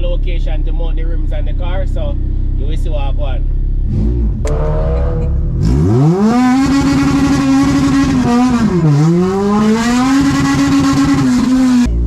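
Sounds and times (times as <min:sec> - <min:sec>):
car engine revving hard: 0:03.8 - 0:11.9.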